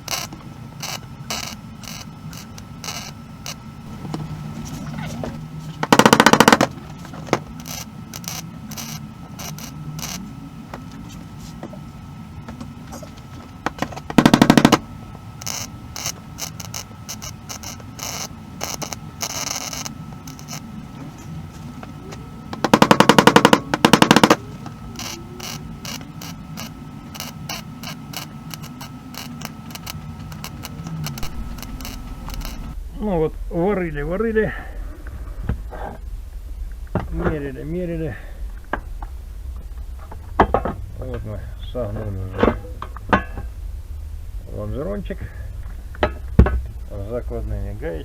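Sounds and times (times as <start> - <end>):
mig welding bursts: 0.0 - 10.6, 13.5 - 32.8.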